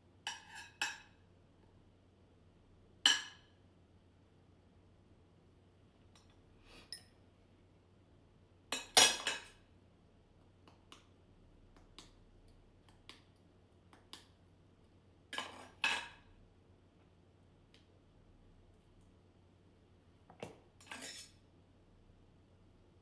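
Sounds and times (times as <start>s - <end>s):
dishes and utensils clattering: 0.3s - 1.2s, 8.8s - 9.6s, 15.4s - 16.2s, 20.4s - 21.4s.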